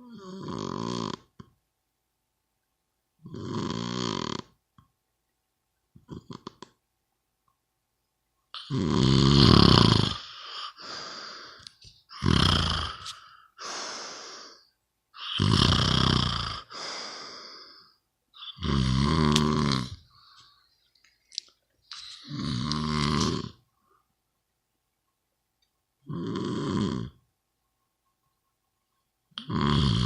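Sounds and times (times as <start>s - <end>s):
person snoring: 0.0s - 1.5s, 3.2s - 4.6s, 6.0s - 6.7s, 8.6s - 20.1s, 22.0s - 23.6s, 26.0s - 27.2s, 29.4s - 30.0s
soft breath: 10.2s - 12.1s, 13.0s - 14.8s, 16.7s - 18.0s, 20.0s - 22.4s.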